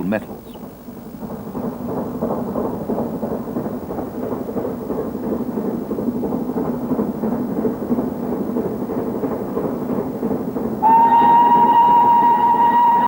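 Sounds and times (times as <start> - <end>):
steam locomotive rumbling: 0.0 - 13.0.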